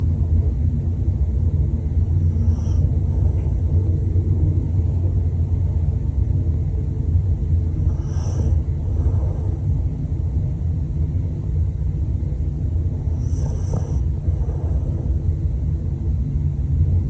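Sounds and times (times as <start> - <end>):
dog snoring: 1.9 - 6.0, 7.2 - 16.3.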